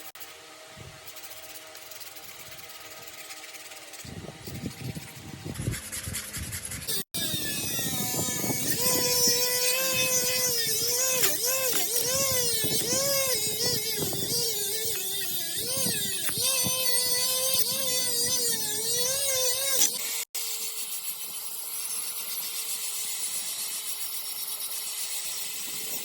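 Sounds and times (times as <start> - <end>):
electric grinder whine: 0.0 - 26.0
blade grinding hiss: 1.0 - 20.3.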